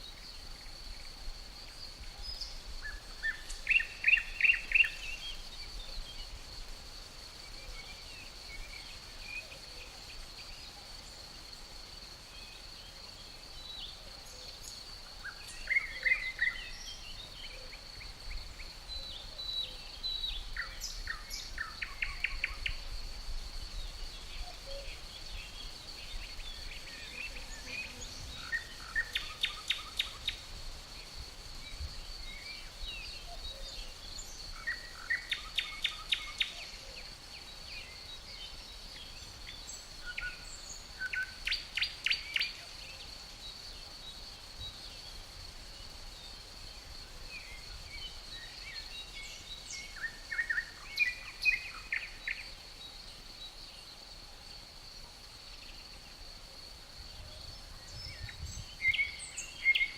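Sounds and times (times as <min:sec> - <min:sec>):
crickets trilling: 0:00.0 - 0:59.9
light breeze rumbling: 0:54.2 - 0:59.4.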